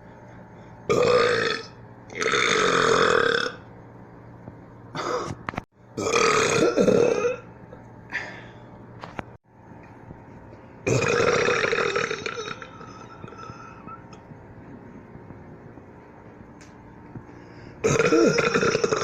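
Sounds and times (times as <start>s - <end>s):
person belching loudly: 0.9s - 3.6s, 6.0s - 7.5s, 10.9s - 13.4s, 17.8s - 19.0s.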